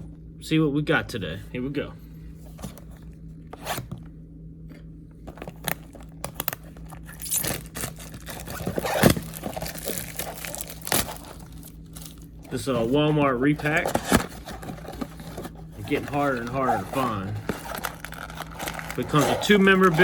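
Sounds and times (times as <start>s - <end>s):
packaging crinkling and tearing: 5.3s - 20.0s.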